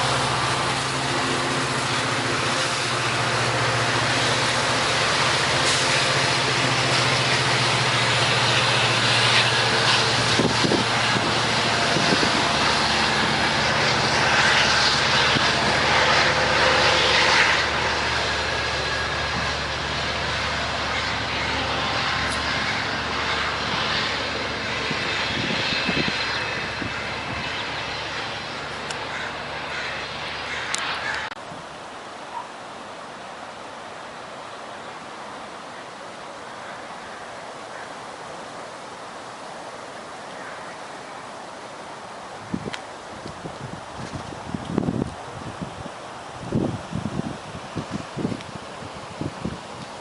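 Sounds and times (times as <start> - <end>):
train wheels rumbling and clattering: 0.0 - 31.4
locomotive engine drone: 0.0 - 50.0.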